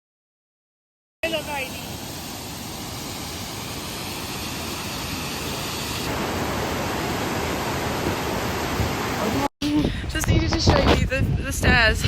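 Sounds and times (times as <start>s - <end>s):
waterfall rushing: 1.2s - 9.5s.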